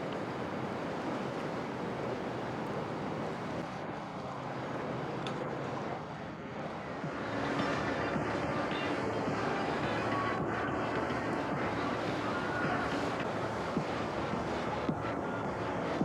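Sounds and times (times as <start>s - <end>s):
motorboat engine: 0.0s - 3.6s
water rushing: 0.0s - 3.6s.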